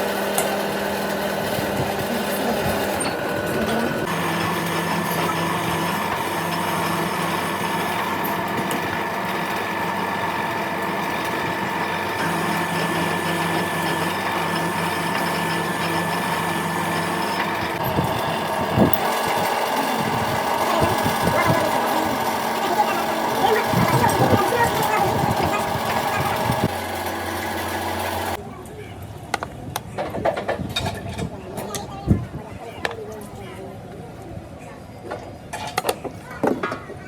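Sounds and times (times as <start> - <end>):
motor-driven machine running: 0.0 - 28.4.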